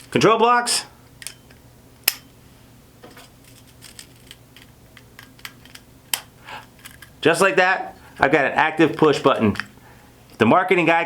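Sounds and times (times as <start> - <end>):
plastic handling clicks: 3.0 - 7.2.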